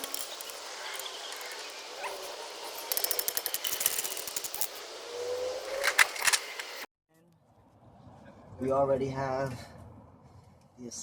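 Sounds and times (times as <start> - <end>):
ratchet wrench clicking: 0.0 - 4.8.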